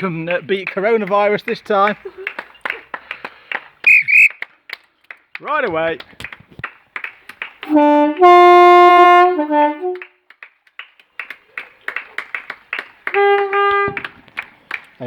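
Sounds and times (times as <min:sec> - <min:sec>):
hand claps: 0:00.0 - 0:08.3, 0:09.6 - 0:15.0
locomotive air horns: 0:07.7 - 0:10.0, 0:13.1 - 0:14.0.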